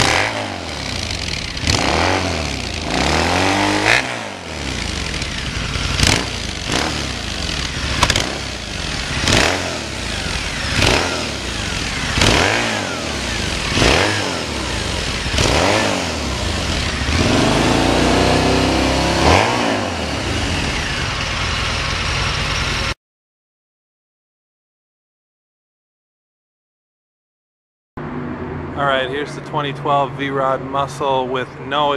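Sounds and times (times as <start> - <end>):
motorcycle engine revving: 0.0 - 23.0.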